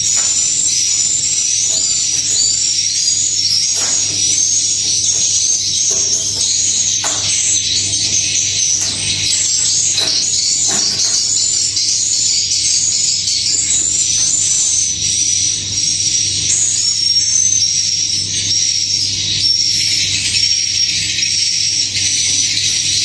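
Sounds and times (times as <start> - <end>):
swiftlets chirping: 0.0 - 14.3.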